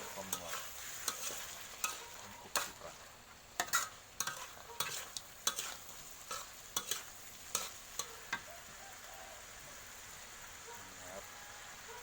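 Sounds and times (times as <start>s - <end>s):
spatula scraping a pan: 0.0s - 8.4s
food sizzling in a pan: 0.0s - 12.0s.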